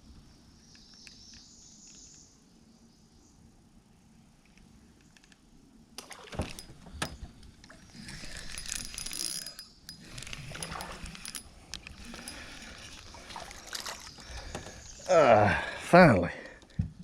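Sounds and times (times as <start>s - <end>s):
handling rustling and clicking: 6.3s - 14.7s.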